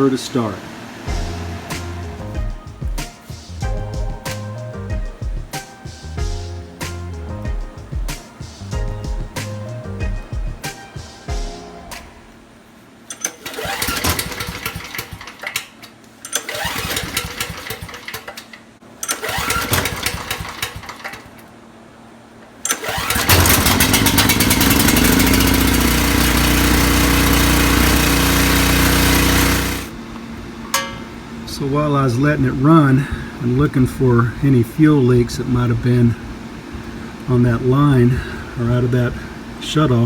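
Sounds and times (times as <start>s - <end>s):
generator engine running: 0.0s - 10.7s, 13.1s - 21.6s, 22.6s - 40.0s
recoil starter pulls: 13.1s - 21.6s, 22.4s - 30.0s.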